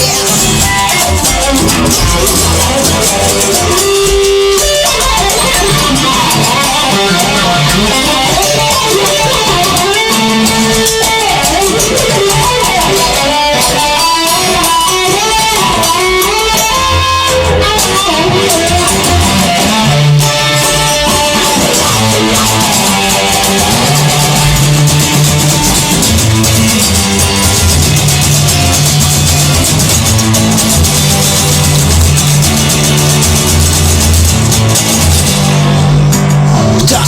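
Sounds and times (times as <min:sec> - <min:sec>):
bass and drums: 0:00.0 - 0:37.0
electric guitar lead: 0:00.0 - 0:37.0.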